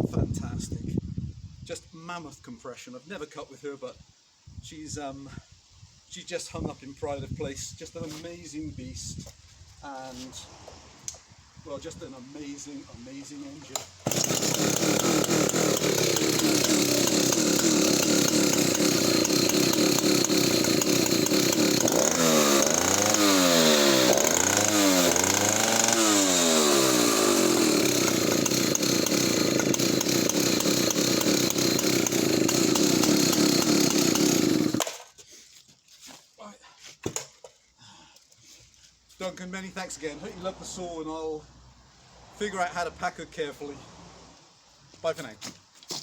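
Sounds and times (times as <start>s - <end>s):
chainsaw idling and revving: 13.7s - 35.1s.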